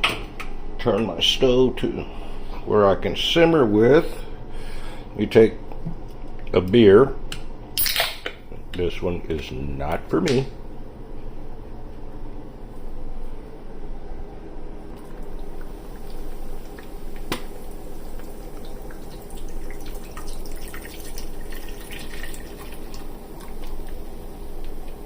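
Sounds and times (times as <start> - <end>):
steady low hum: 0.0 - 25.0
beer pouring and fizzing: 15.0 - 25.0.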